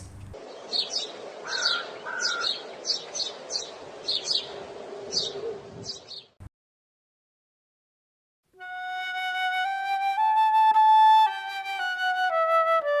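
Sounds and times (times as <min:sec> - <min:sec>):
small birds chirping: 0:00.0 - 0:06.4.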